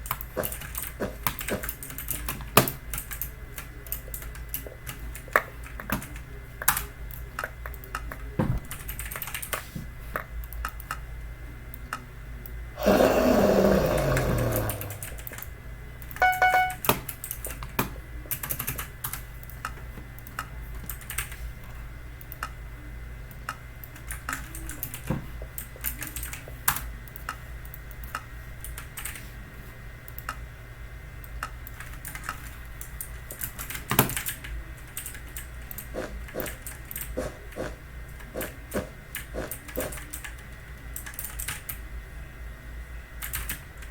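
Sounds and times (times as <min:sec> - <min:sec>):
short beep: 0:16.2 - 0:16.9
mechanical keyboard clicks: 0:41.0 - 0:41.8, 0:43.2 - 0:43.9.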